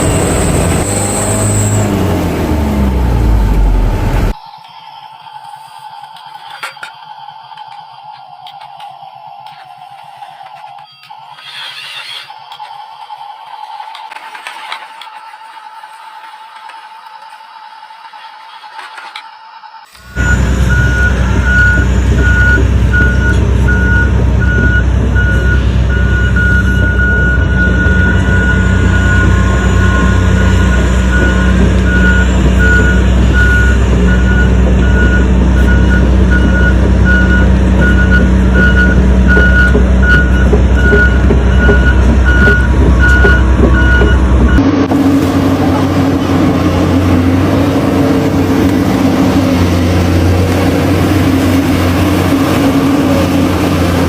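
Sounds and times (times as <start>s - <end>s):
reversing beeper: 0.0s - 5.6s, 19.9s - 54.0s
low engine-like drone: 0.0s - 16.8s, 19.9s - 54.0s.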